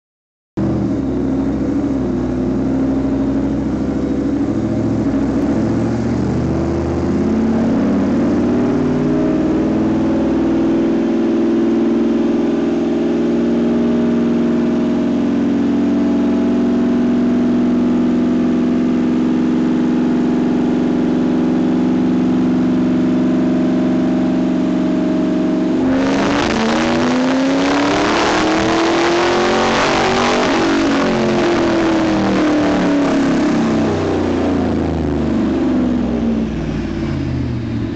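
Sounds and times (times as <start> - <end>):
engine revving under load: 0.6 - 37.9
engine winding down: 0.6 - 37.9.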